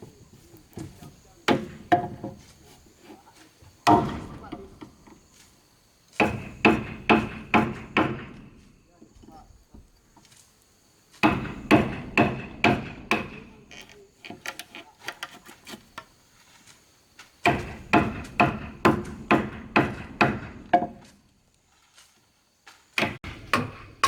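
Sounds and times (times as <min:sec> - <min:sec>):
light taps and knocks: 0:00.0 - 0:05.4
hammer blows: 0:23.0 - 0:24.0.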